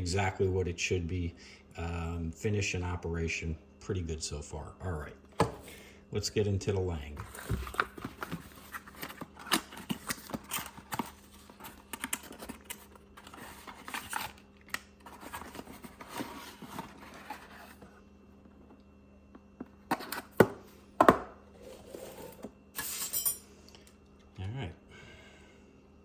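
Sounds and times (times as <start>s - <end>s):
packaging rustling and clicking: 7.2s - 17.9s.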